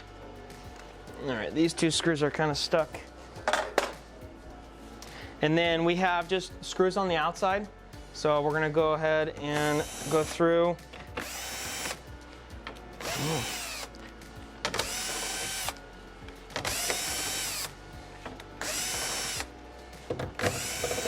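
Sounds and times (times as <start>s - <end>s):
drill-driver spinning: 9.6s - 10.4s, 11.2s - 12.0s, 13.0s - 13.9s, 14.7s - 15.8s, 16.5s - 17.7s, 18.6s - 19.5s, 20.1s - 21.0s.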